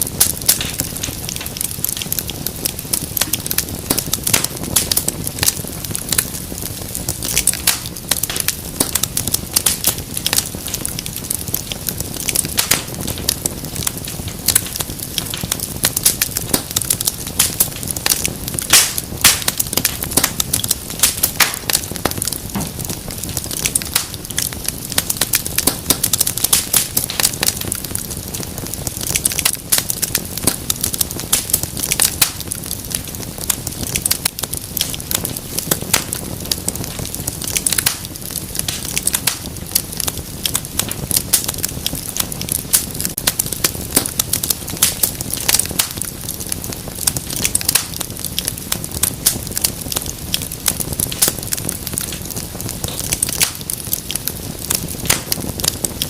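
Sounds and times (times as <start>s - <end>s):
fire crackling and popping: 0.0s - 56.0s
low rush of flame: 0.0s - 56.0s.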